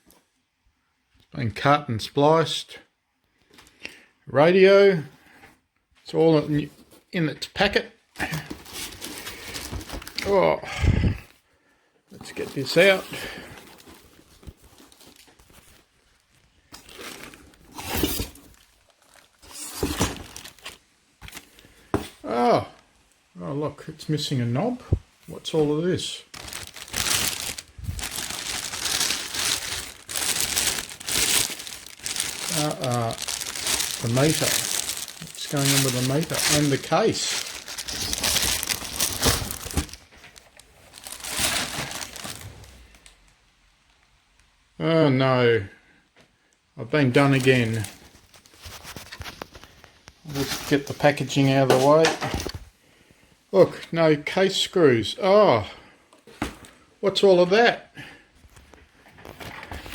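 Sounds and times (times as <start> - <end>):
plastic packaging crinkling: 8.2 - 10.3, 12.2 - 21.6, 25.4 - 43.1, 47.1 - 51.4.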